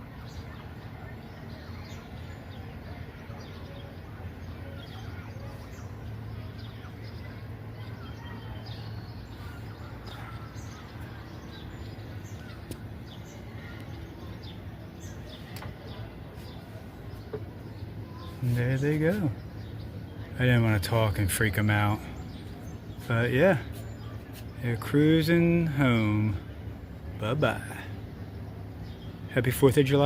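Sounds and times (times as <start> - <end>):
birds chirping: 0.0 - 30.0
steady low hum: 0.0 - 30.0.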